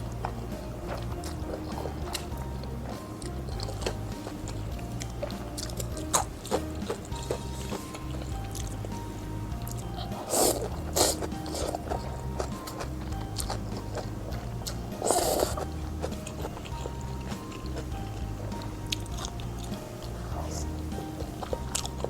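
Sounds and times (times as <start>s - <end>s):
background music: 0.0s - 22.0s
loud bites and chewing: 0.0s - 22.0s.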